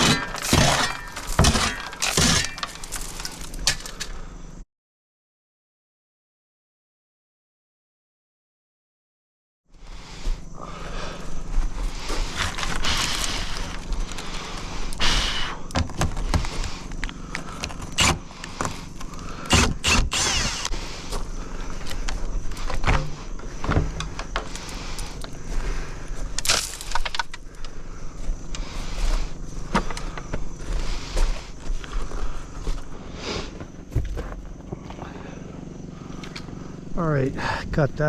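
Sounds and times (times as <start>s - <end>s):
parts and tools clicking and rattling: 0.0s - 4.2s, 12.1s - 15.0s, 15.6s - 25.4s, 26.2s - 27.8s, 36.2s - 36.6s.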